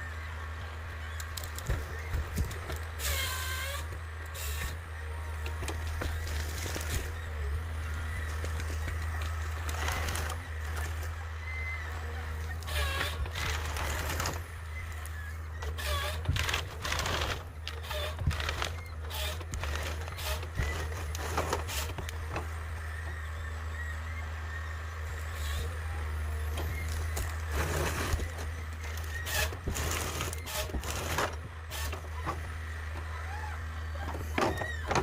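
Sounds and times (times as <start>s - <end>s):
diesel engine droning: 0.0s - 35.0s.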